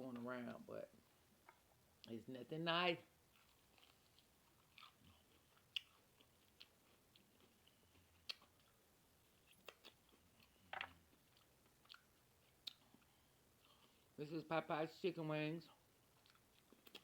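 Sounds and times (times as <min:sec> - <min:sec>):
food crunching: 0:03.3 - 0:14.1, 0:16.0 - 0:17.0
person chewing food: 0:03.3 - 0:14.2, 0:15.8 - 0:17.0.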